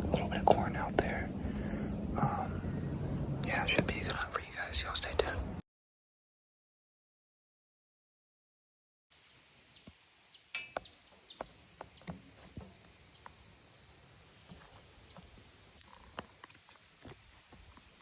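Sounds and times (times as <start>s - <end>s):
high falling chirps: 0.0s - 5.6s
high insect drone: 0.0s - 5.6s, 9.1s - 18.0s.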